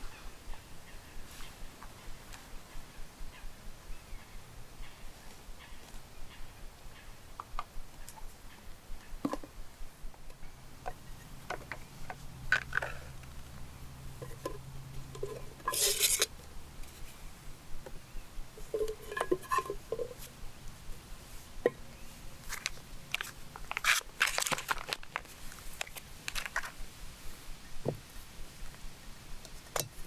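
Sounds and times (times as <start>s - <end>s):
camp cookware clinking: 14.2s - 16.3s, 18.6s - 20.2s
rustling: 15.2s - 17.3s, 21.1s - 28.9s.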